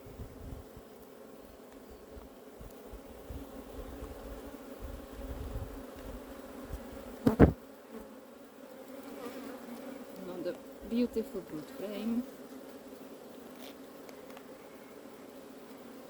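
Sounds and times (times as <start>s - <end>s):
honeybees buzzing: 0.0s - 16.0s.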